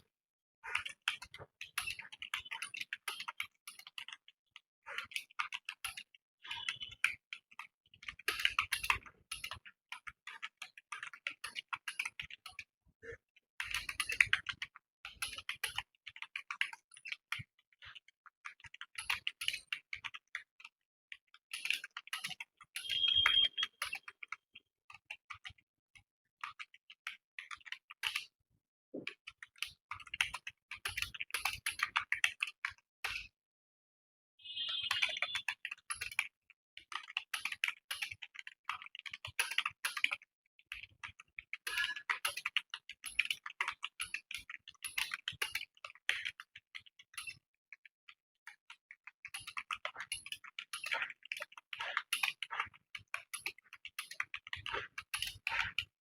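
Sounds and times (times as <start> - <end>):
computer keyboard typing: 0.6 - 20.7, 21.4 - 25.6, 34.4 - 47.4, 49.3 - 56.0.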